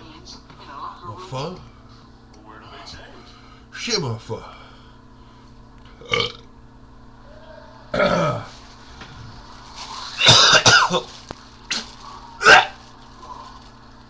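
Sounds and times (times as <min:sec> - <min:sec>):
man burping: 0:06.0 - 0:06.5, 0:07.9 - 0:08.5.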